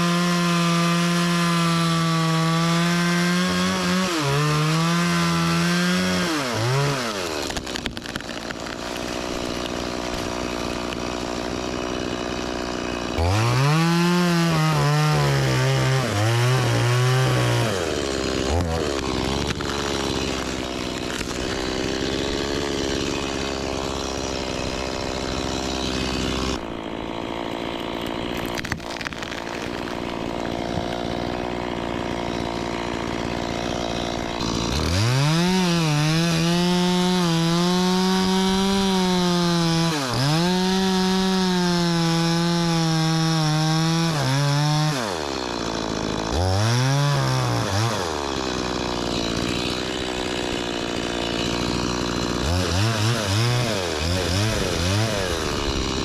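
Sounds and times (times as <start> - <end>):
chainsaw revving: 0.0 - 56.0.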